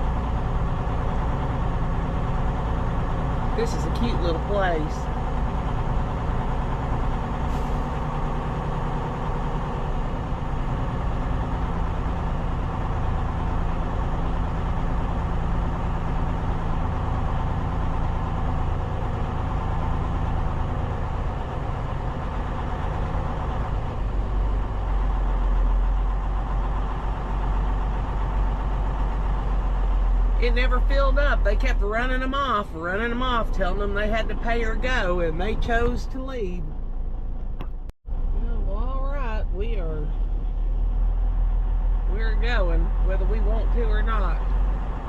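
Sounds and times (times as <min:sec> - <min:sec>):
deep low rumble: 0:00.0 - 0:45.0
diesel truck engine running: 0:00.0 - 0:45.0.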